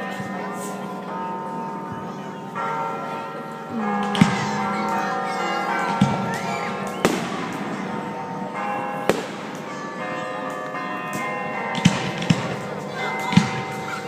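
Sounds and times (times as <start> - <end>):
fireworks bangs: 7.0 - 8.3, 9.0 - 9.9.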